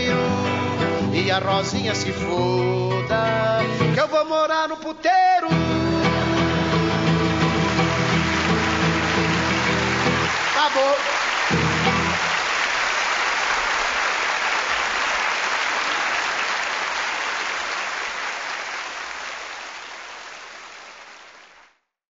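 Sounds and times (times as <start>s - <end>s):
audience applauding: 6.0s - 21.8s.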